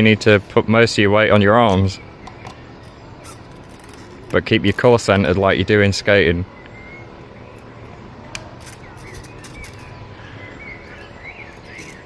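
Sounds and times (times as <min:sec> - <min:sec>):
steady low background noise: 0:00.0 - 0:12.0
faint bird chirps: 0:05.3 - 0:12.0.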